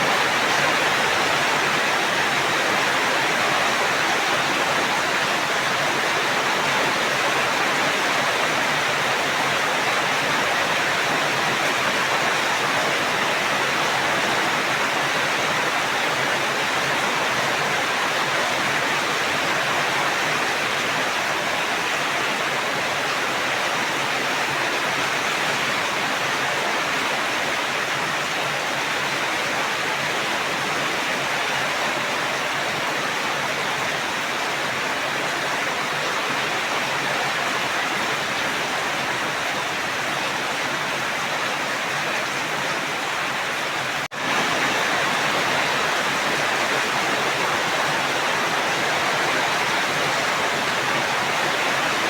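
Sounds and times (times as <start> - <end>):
heavy rain: 0.0 - 52.0.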